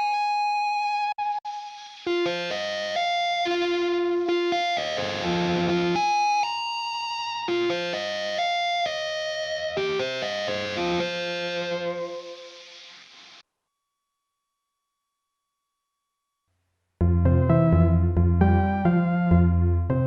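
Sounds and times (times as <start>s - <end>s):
synthesizer notes and chords: 0.0s - 12.5s, 17.0s - 20.0s.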